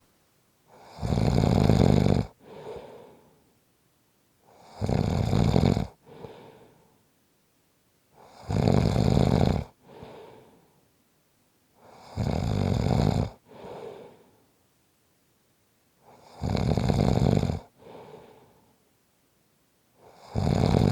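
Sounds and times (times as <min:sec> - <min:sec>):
person snoring: 0:00.7 - 0:03.2, 0:04.6 - 0:06.7, 0:08.2 - 0:10.5, 0:11.8 - 0:14.2, 0:16.1 - 0:18.5, 0:20.0 - 0:20.9.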